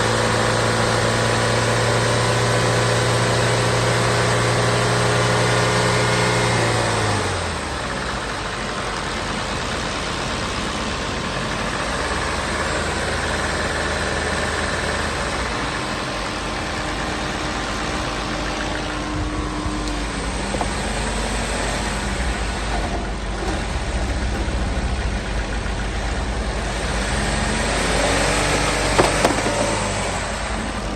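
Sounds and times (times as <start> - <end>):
engine lifter ticking: 6.6 - 30.9
car engine revving: 9.4 - 30.9.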